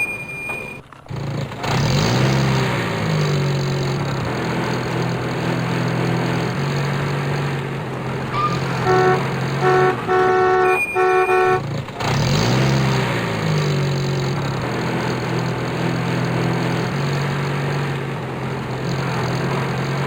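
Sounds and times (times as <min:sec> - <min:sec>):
truck engine idling: 0:00.0 - 0:20.0
engine revving: 0:01.0 - 0:20.0
truck horn toots: 0:08.3 - 0:11.8.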